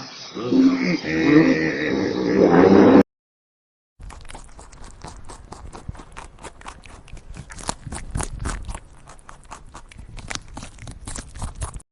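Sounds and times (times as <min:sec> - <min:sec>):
animal chewing: 0:04.0 - 0:11.8.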